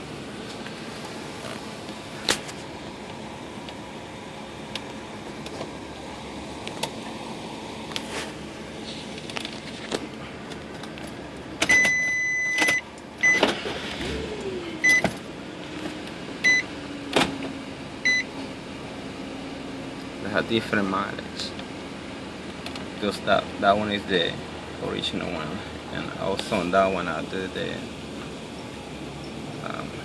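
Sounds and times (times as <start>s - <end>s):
electronic beeper beeping: 14.8s - 15.1s.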